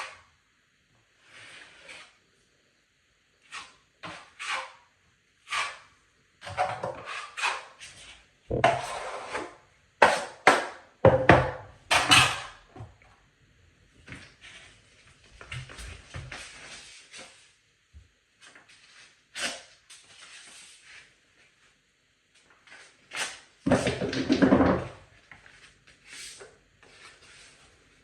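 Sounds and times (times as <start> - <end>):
taping knife scraping drywall: 1.2 - 2.2, 3.4 - 10.4, 18.4 - 21.2.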